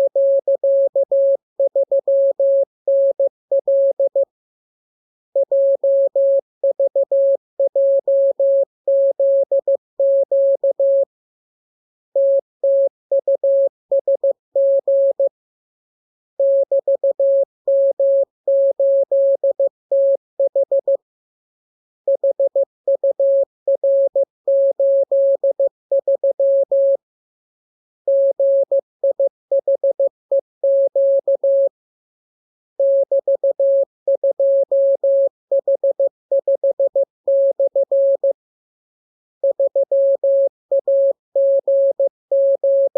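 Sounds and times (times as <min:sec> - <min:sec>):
morse code tone: 0:39.4 - 0:42.9.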